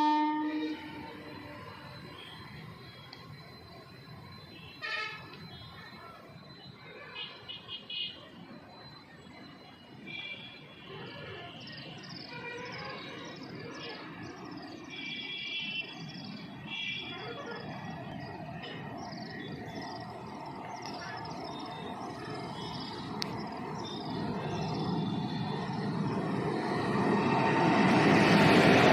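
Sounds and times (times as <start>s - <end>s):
approaching train rumble: 0.0s - 5.4s, 17.4s - 28.9s.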